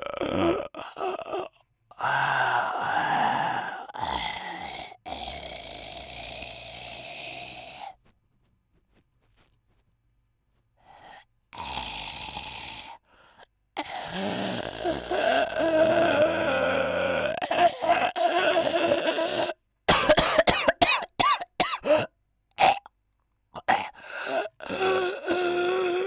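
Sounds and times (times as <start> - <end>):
man snoring heavily: 0.0 - 8.0, 11.6 - 13.0, 13.8 - 19.6.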